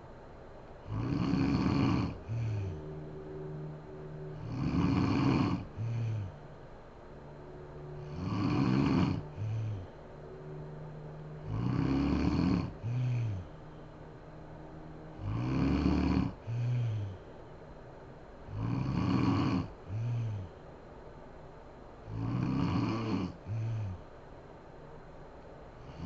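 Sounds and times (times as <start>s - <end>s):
woman snoring: 0.8s - 3.0s, 4.3s - 6.6s, 7.8s - 10.0s, 11.4s - 13.9s, 15.1s - 17.3s, 18.5s - 20.6s, 22.0s - 24.1s, 25.8s - 26.0s.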